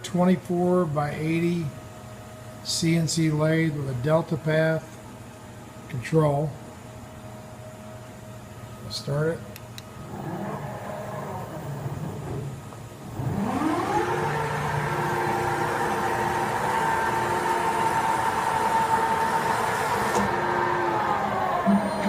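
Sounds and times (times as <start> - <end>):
lathe spindle motor whine: 10.0 - 22.0.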